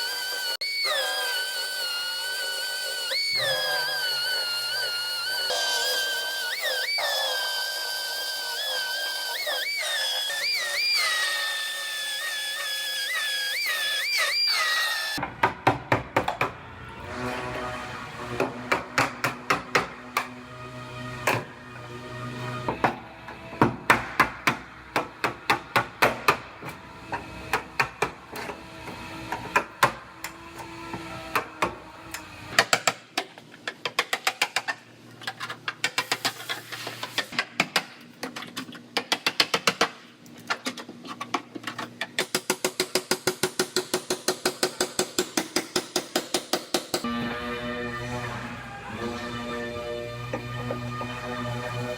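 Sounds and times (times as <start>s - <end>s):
background music: 16.6s - 27.5s, 47.1s - 51.9s.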